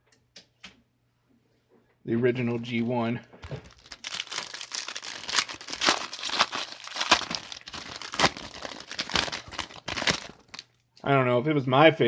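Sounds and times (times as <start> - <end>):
plastic packaging crinkling: 3.4 - 10.8.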